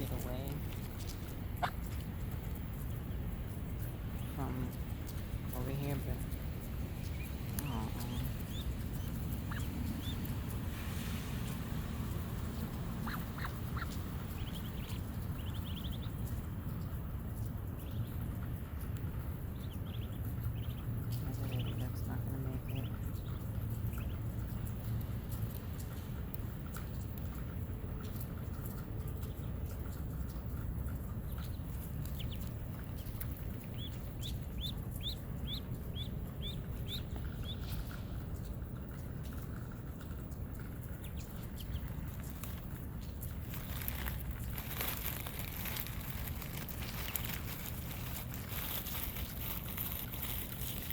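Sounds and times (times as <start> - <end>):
ducklings peeping: 0.0 - 50.9
low background noise: 0.0 - 50.9
low background rumble: 0.0 - 50.9
duck calls: 13.0 - 15.9.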